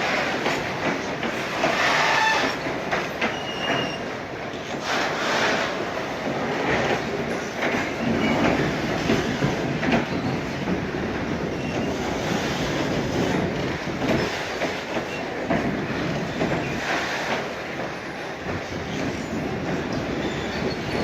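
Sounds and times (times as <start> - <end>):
train wheels clattering on track: 0.0 - 21.0
wheels squealing on rail: 1.3 - 5.9, 6.6 - 13.5, 16.2 - 21.0.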